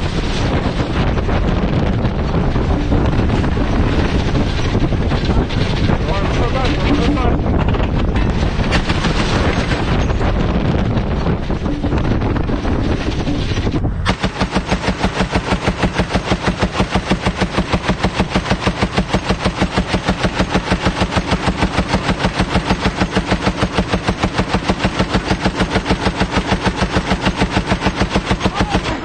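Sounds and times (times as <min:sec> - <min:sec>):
heavy machine gun automatic fire: 0:00.0 - 0:29.0.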